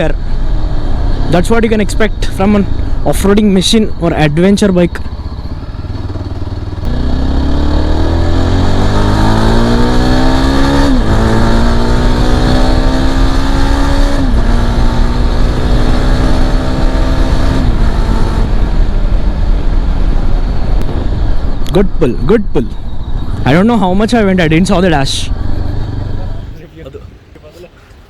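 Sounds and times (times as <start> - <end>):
motorcycle engine accelerating: 2.4 - 21.7, 22.8 - 26.6.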